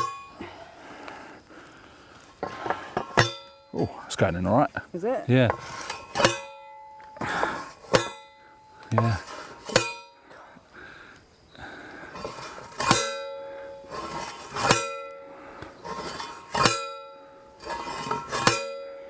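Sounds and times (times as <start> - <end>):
post driver clanging on metal post: 0.0 - 0.3, 2.4 - 3.8, 5.5 - 10.2, 12.2 - 15.2, 15.9 - 19.0.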